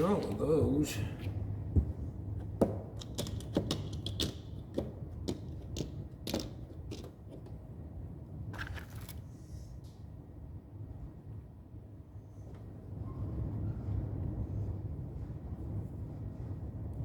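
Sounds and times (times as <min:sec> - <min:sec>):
low steady hum: 0:00.0 - 0:03.0.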